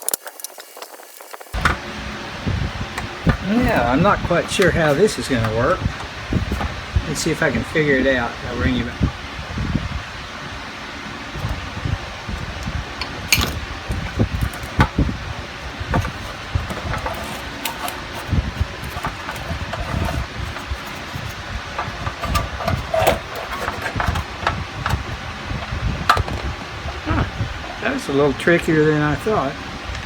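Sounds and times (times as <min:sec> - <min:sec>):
electric fan noise: 0:00.0 - 0:30.0
metallic clicks and scraping: 0:02.9 - 0:06.8, 0:12.4 - 0:26.6.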